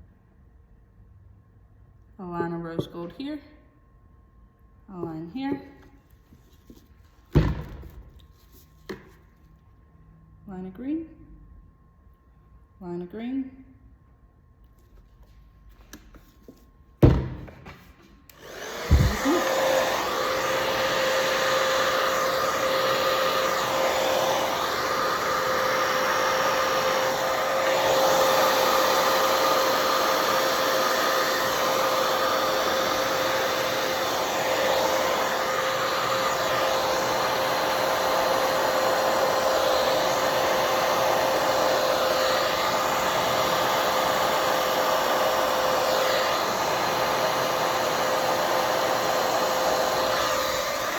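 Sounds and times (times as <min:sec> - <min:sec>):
blow dryer whooshing: 0:18.3 - 0:50.9.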